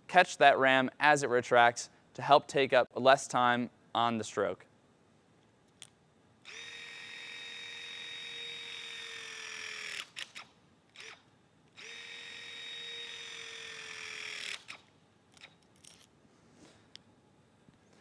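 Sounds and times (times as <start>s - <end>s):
hydraulic crimper motor running: 6.5s - 14.9s.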